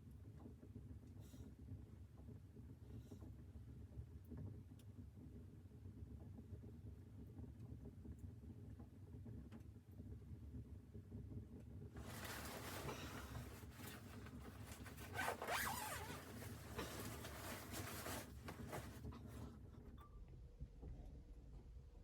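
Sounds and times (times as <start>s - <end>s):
zipper being pulled: 12.0s - 19.1s.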